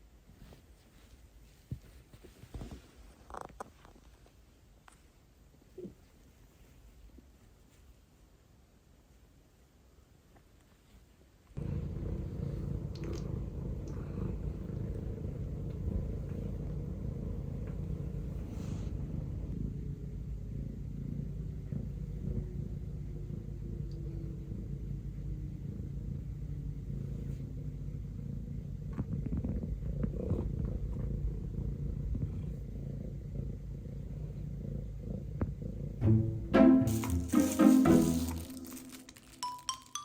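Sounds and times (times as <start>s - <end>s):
faint rustles and clicks: 0.0s - 8.3s, 10.2s - 11.6s, 28.8s - 32.7s, 36.9s - 40.0s
cat purring: 11.6s - 36.0s.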